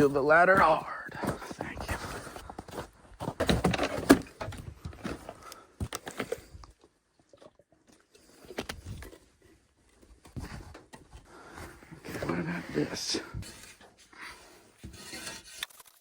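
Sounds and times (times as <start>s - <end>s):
knocks and clatter: 3.2s - 5.2s.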